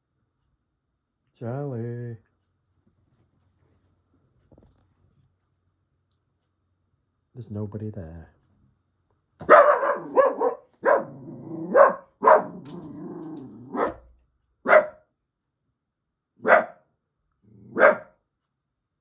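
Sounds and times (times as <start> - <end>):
dog growling: 9.4 - 14.0, 17.4 - 18.0
dog barking: 9.4 - 15.0, 16.4 - 16.8, 17.6 - 18.2.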